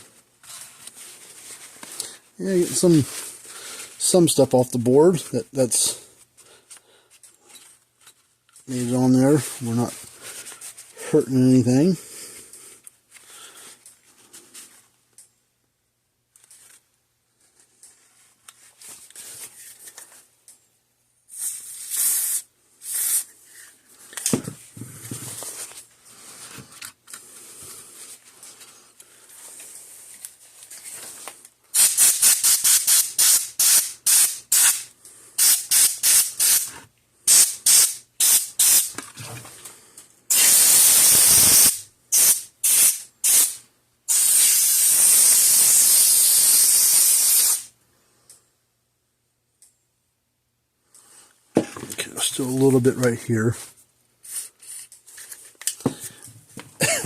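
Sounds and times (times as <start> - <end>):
aerosol spray can hissing: 21.4 - 23.3, 31.8 - 36.7, 37.3 - 38.9, 40.3 - 47.7.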